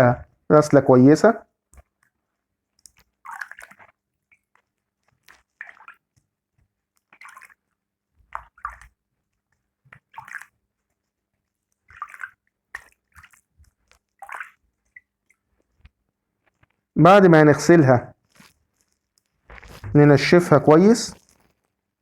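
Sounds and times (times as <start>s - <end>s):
splashing water in a bowl: 1.7s - 16.0s.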